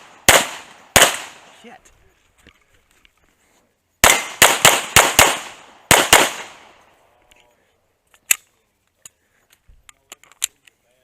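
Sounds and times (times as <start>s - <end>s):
pistol shots: 0.0s - 1.5s, 4.0s - 6.8s.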